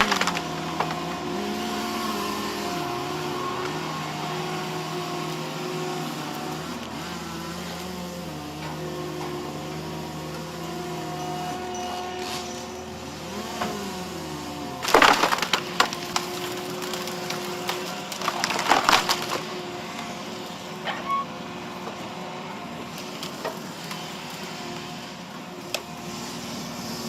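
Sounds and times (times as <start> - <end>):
wood cracking and splintering: 0.0 - 4.7, 12.2 - 20.1, 22.9 - 24.4
wood-processing machine humming: 0.0 - 27.0.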